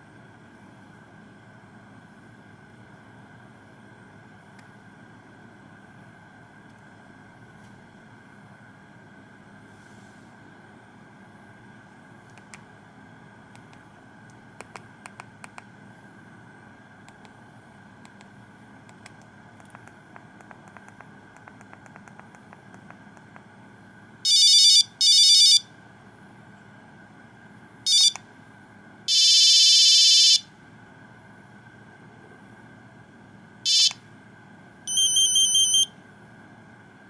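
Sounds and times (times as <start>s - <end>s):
mobile phone ringtone beeps: 24.3s - 25.6s, 27.9s - 28.2s, 29.1s - 30.4s, 33.7s - 34.0s, 34.9s - 35.9s.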